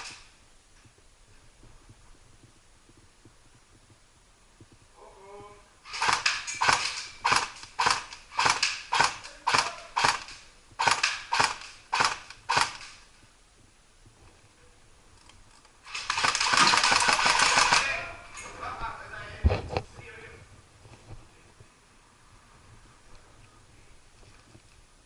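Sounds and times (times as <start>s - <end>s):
airsoft gun shots: 5.9s - 13.0s, 15.9s - 18.1s.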